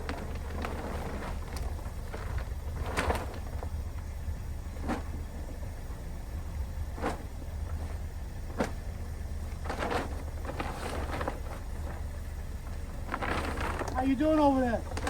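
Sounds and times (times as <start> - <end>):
rustling or scraping: 0.0 - 3.8, 4.7 - 5.5, 6.9 - 15.0
steady low rumble: 0.0 - 15.0.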